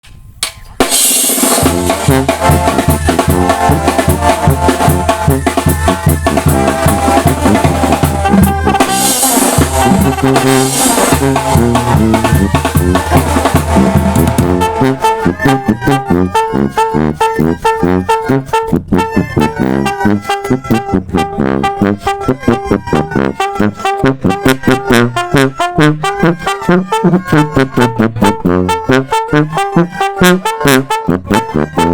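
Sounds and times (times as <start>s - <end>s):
cymbal crash: 0.6s - 1.9s
brass band music: 0.8s - 31.9s.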